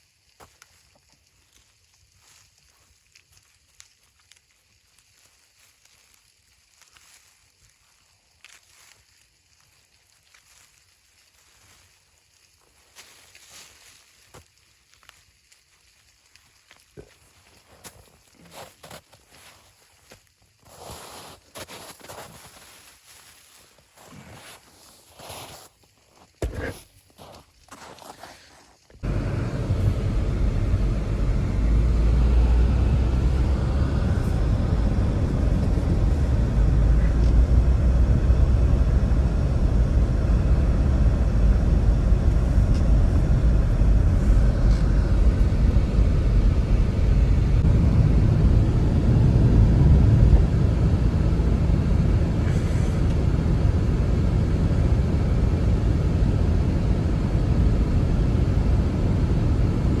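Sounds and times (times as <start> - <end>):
blizzard wind roaring: 29.0 - 60.0.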